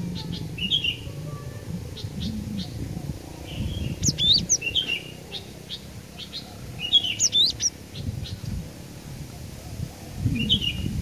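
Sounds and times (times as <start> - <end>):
bird chirping: 1.9 - 8.4.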